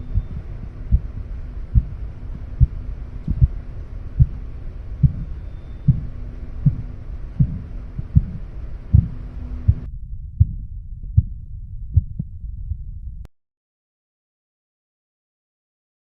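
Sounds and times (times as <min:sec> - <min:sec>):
background hiss: 0:00.0 - 0:09.9
low pulse thumps through stethoscope: 0:00.0 - 0:13.3.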